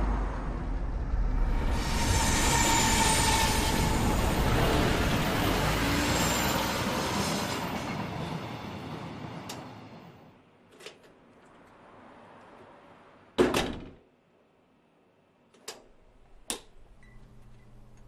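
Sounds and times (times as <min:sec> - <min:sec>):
train wheels rumbling: 0:00.0 - 0:10.2
high squealing tones: 0:01.5 - 0:07.5.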